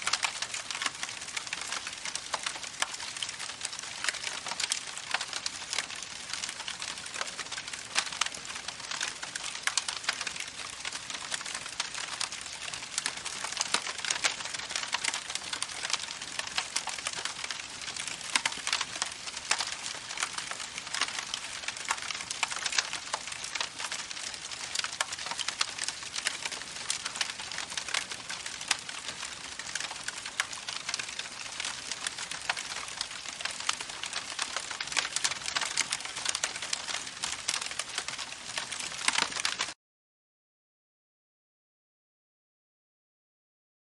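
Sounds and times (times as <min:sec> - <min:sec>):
campfire crackling: 0:00.0 - 0:39.8.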